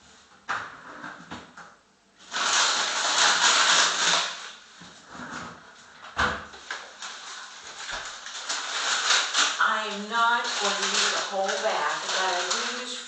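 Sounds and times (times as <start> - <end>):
plastic bag crinkling: 2.2 - 4.7, 6.0 - 13.0.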